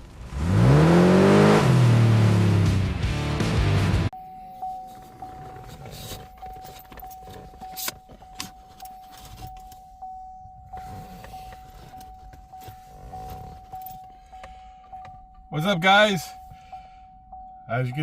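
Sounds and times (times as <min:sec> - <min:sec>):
car warning chime dinging: 0:04.1 - 0:18.0
keys jangling in ignition: 0:04.4 - 0:15.6.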